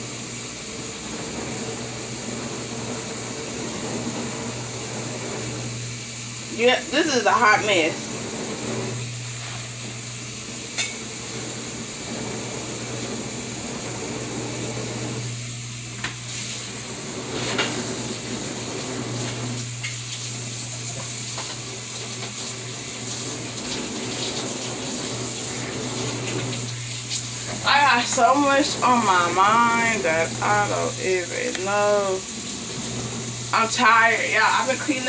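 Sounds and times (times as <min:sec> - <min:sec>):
steady low hum: 0:25.3 - 0:35.0.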